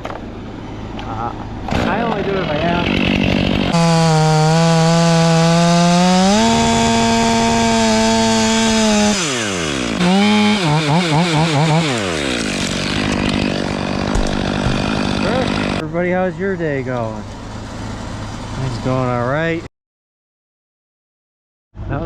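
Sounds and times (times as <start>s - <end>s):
chainsaw cutting wood: 1.7s - 15.8s.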